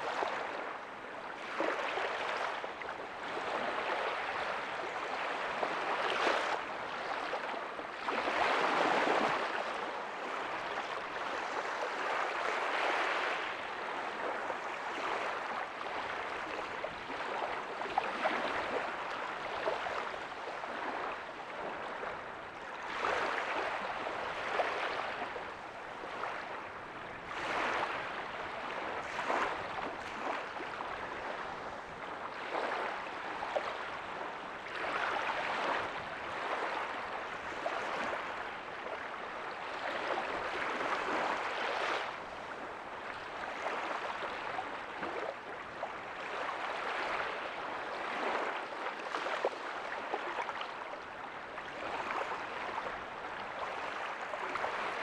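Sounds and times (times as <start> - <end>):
ocean waves breaking softly: 0.0 - 55.0.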